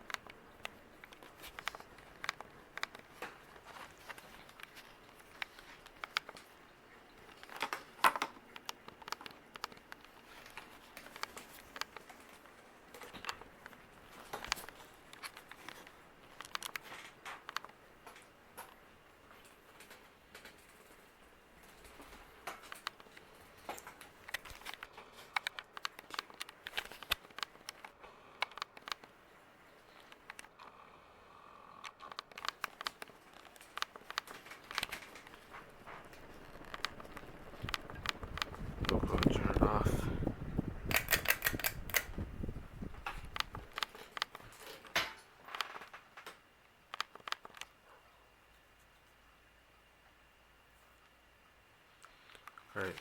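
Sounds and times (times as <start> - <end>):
light clicks and ticks: 0.0 - 30.8, 31.8 - 49.2, 52.0 - 53.0
ceiling fan running: 0.0 - 53.0.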